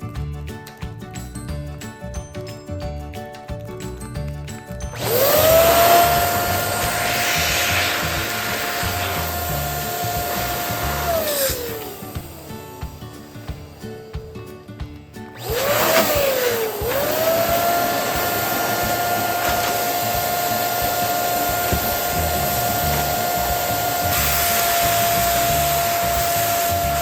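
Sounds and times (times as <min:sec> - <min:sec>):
electric balloon pump whining: 0:04.8 - 0:14.4, 0:15.4 - 0:27.0
rush of air: 0:05.0 - 0:11.8.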